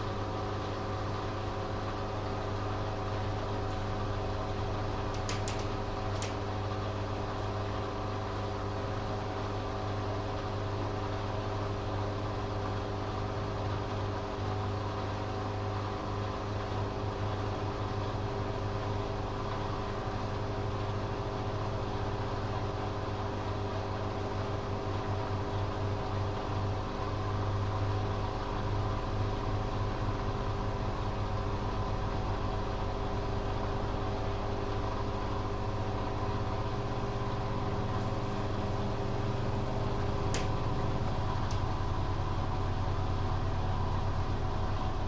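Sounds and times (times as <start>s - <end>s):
washing machine humming: 0.0s - 45.0s
light clicks: 40.2s - 41.7s.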